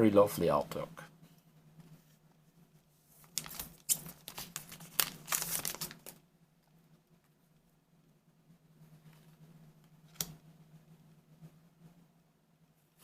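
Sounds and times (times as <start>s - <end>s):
trading cards rustling and clicking: 3.2s - 6.2s.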